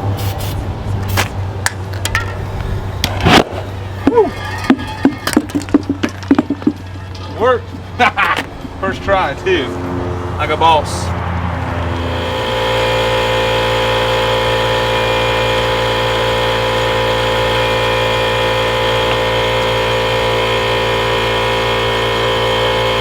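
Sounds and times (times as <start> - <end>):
small gasoline engine running: 11.4 - 23.0.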